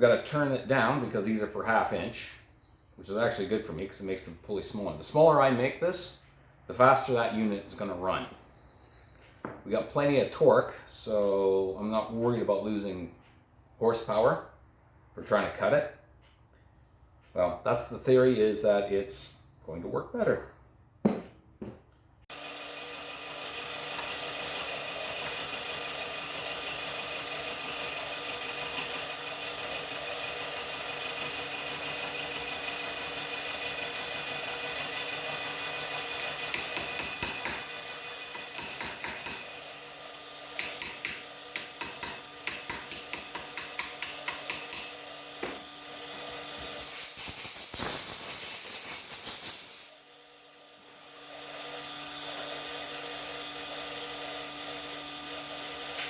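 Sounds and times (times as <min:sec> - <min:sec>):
power tool cutting metal: 0:22.3 - 0:56.0
loud hiss: 0:46.6 - 0:50.0.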